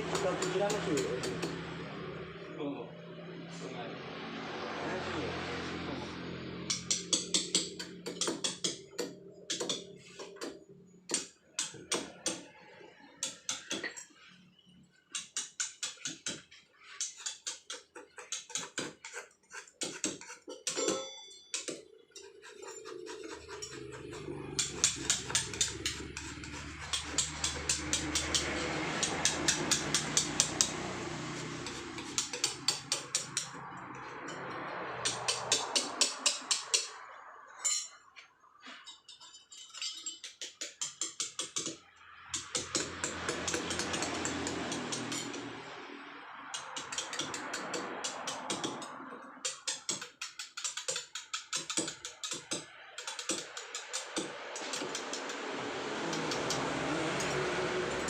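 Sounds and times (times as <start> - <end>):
hammer striking steel chisel on stone: 0.0 - 1.7, 6.7 - 12.6, 13.2 - 14.2, 15.1 - 30.8, 31.4 - 33.7, 34.3 - 37.0, 39.9 - 45.6, 46.6 - 55.4.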